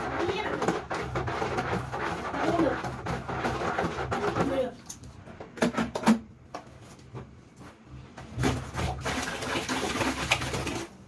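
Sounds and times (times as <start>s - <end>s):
water splashing in a container: 8.4s - 11.0s.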